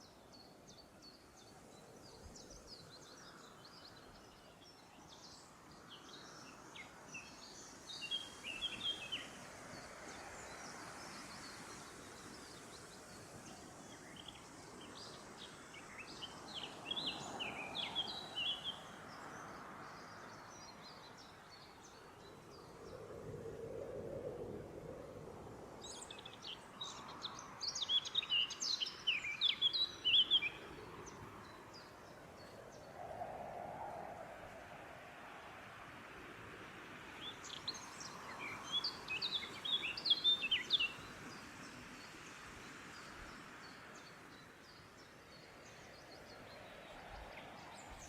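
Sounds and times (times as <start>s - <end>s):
faint background hiss: 0.0s - 48.0s
songbirds chirping: 0.0s - 48.0s.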